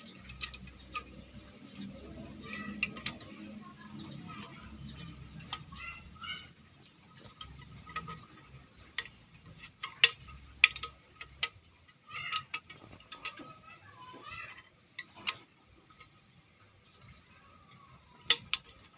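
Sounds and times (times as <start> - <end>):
sharp clicks and knocks: 0.0 - 5.9, 7.2 - 13.7, 18.2 - 18.9
faint voices: 0.9 - 6.7, 12.0 - 15.5.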